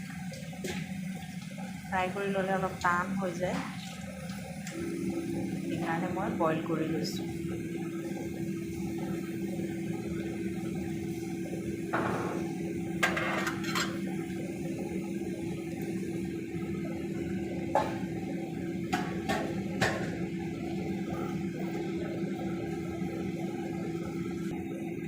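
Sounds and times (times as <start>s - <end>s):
low hum: 4.5s - 18.6s.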